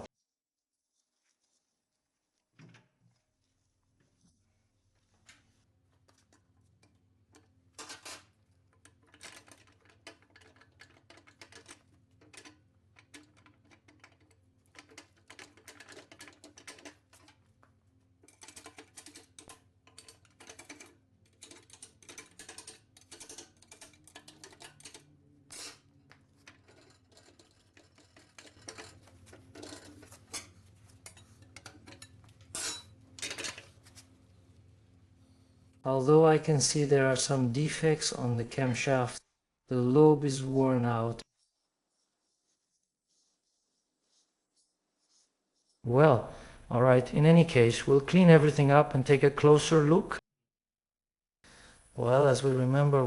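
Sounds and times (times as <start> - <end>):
metal tools clinking and clattering: 26.3 - 33.9.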